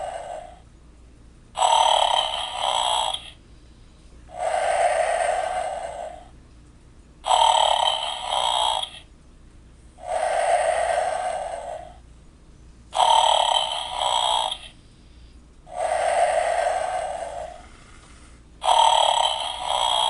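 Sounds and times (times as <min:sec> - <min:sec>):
snoring sound effect: 0:00.0 - 0:00.6, 0:01.6 - 0:03.4, 0:04.3 - 0:06.3, 0:07.2 - 0:09.1, 0:10.0 - 0:12.0, 0:13.0 - 0:14.8, 0:15.7 - 0:20.0.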